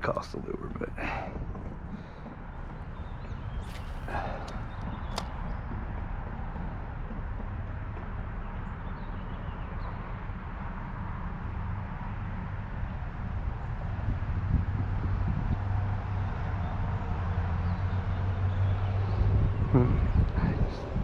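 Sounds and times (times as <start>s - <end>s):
sharp click: 3.6s - 5.4s.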